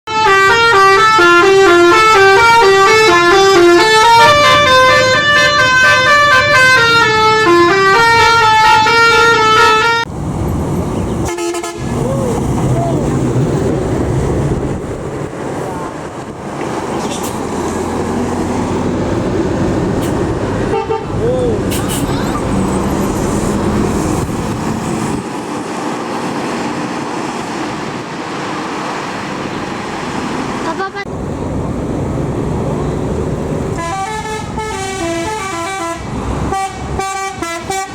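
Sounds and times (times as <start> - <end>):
engine and road noise: 0.0 - 37.9
multi-tone musical bus horn: 0.1 - 10.1, 11.2 - 12.1, 20.0 - 22.4, 33.7 - 37.9.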